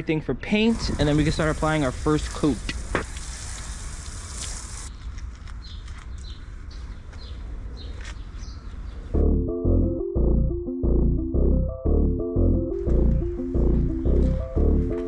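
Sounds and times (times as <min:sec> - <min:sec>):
steady hiss: 0:00.7 - 0:04.9
background music: 0:09.2 - 0:15.0.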